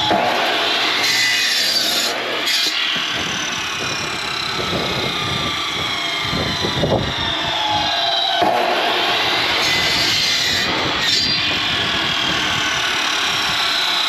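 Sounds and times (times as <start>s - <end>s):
saw blade cutting log: 0.0s - 14.0s
sawmill engine running: 0.0s - 14.0s
wind rumbling on microphone: 3.0s - 13.7s.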